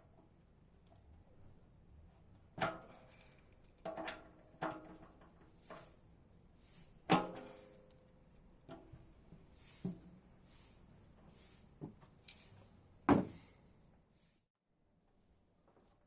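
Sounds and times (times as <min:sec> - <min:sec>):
tools knocking and clanking: 0:13.1 - 0:13.5.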